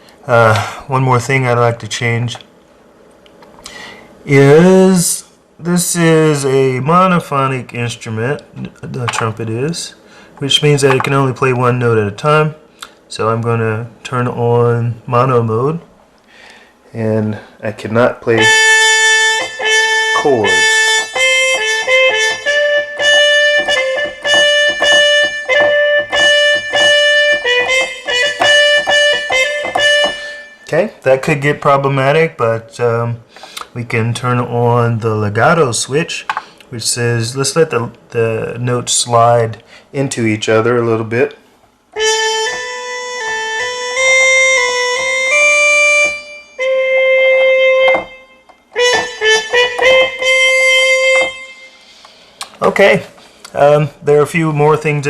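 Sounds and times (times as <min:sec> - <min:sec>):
synthetic trumpet notes: 0:18.2 - 0:33.0, 0:42.0 - 0:51.9.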